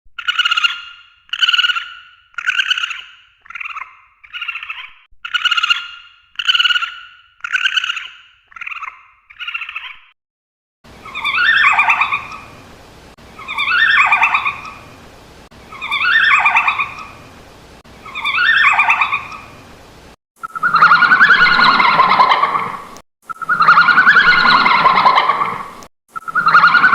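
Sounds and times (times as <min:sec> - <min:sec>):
red panda squeaking calls: 0:00.2 - 0:10.0, 0:18.0 - 0:19.3
faint hiss: 0:10.9 - 0:20.2
red panda long calls: 0:13.4 - 0:14.7, 0:18.0 - 0:19.3.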